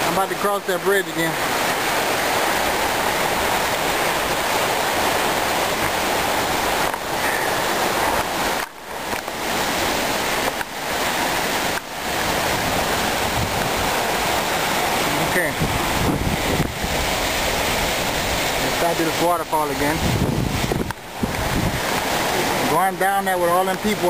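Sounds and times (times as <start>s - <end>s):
waterfall roaring: 0.0s - 24.0s.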